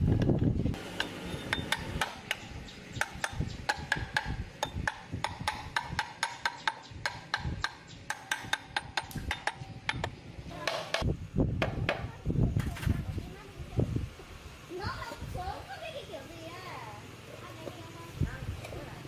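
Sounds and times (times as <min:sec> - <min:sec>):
metal tools tapping on metal: 0:01.0 - 0:11.1.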